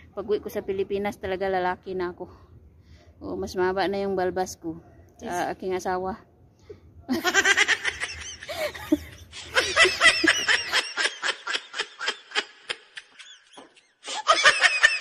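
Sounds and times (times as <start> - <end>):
high-pitched laughter: 7.1 - 15.0.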